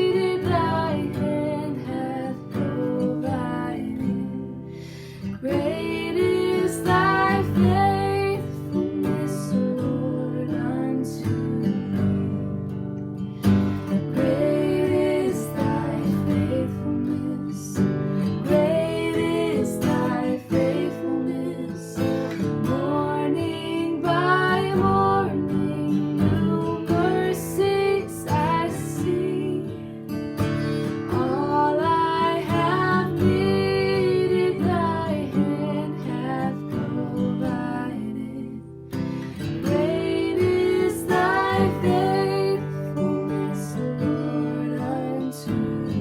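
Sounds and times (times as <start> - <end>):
person singing: 0.0 - 12.3, 14.1 - 29.9, 30.9 - 46.0
acoustic guitar strumming: 11.8 - 44.4.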